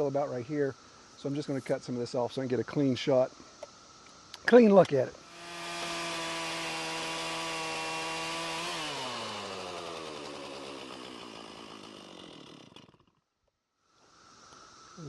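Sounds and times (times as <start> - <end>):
chainsaw cutting log: 5.3 - 13.2.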